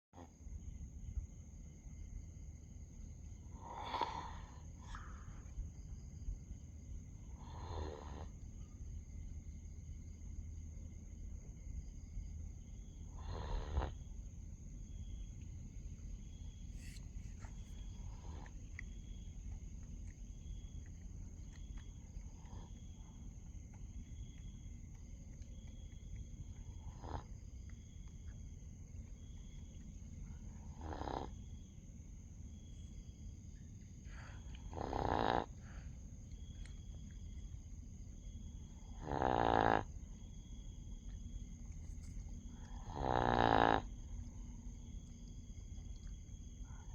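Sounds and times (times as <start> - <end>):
dog snoring: 7.3 - 8.3, 13.2 - 14.0, 30.6 - 31.4, 34.7 - 35.6, 38.8 - 39.9, 42.7 - 44.0.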